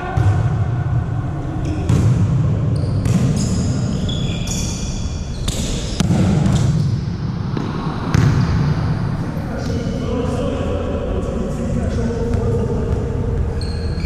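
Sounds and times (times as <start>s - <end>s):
low rumble of hall: 0.0s - 4.0s, 6.0s - 14.0s
volleyball hits: 1.7s - 3.5s, 5.5s - 8.7s
shoe squeaks: 2.7s - 6.9s, 13.5s - 14.0s.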